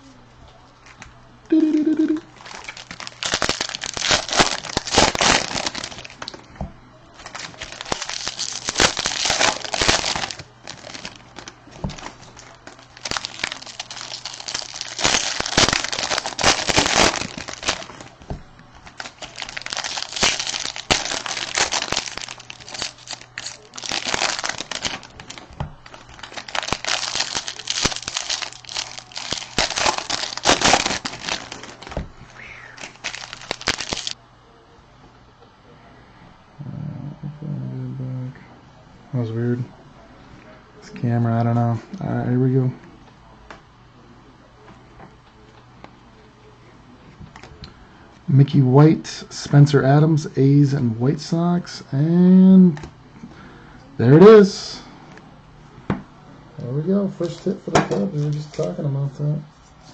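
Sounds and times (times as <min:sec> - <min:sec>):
plastic packaging crinkling: 0:01.8 - 0:06.5, 0:07.2 - 0:34.2, 0:47.3 - 0:47.6.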